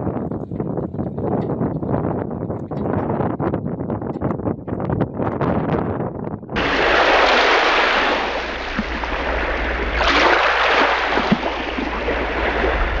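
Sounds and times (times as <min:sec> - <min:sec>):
rushing sea water: 0:06.6 - 0:13.0.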